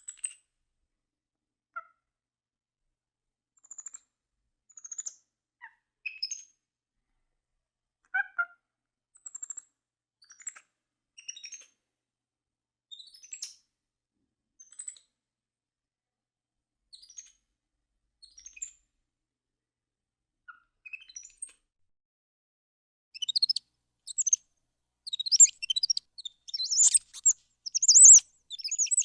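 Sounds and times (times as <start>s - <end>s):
monkey chirping and twittering: 23.2s - 24.4s, 25.1s - 29.0s.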